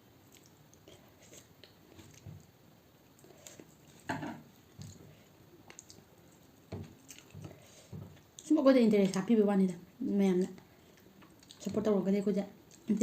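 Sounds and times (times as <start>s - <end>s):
person chewing food: 0.2s - 2.5s, 3.1s - 8.5s, 10.8s - 11.7s.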